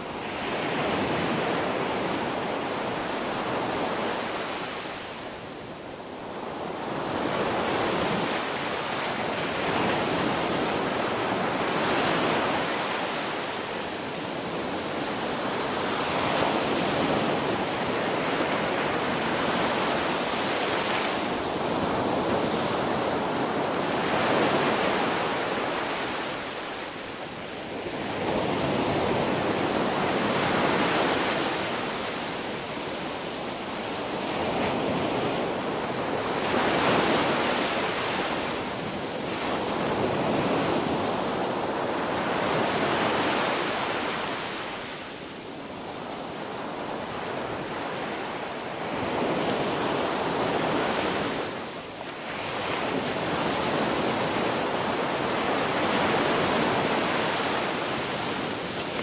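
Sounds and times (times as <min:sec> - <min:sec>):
ocean waves breaking on beach: 0:00.0 - 0:59.0.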